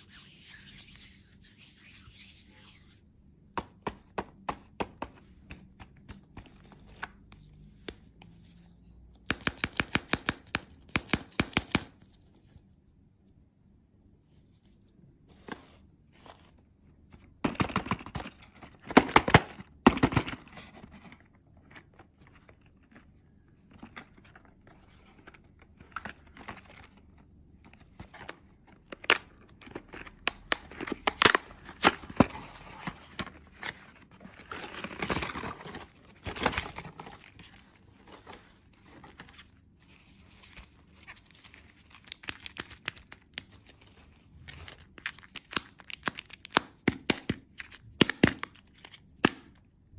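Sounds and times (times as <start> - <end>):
candy wrappers crinkling: 44.7 - 48.9.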